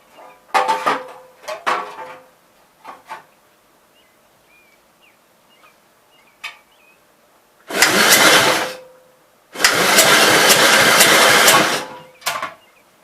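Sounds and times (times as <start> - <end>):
engine starter cranking: 7.7 - 8.9, 9.6 - 12.4.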